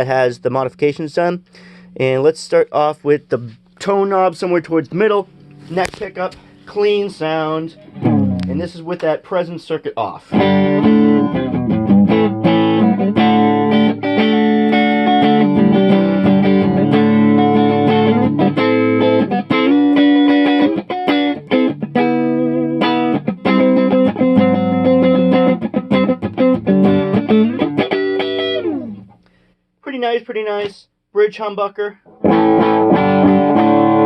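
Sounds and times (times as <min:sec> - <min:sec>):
clean electric guitar: 0:04.8 - 0:09.1, 0:10.3 - 0:29.4, 0:32.0 - 0:34.0.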